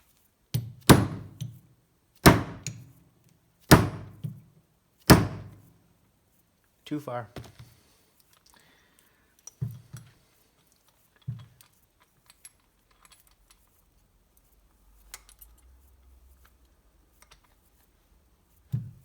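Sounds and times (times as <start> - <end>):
metal parts clicking: 10.7 - 13.8.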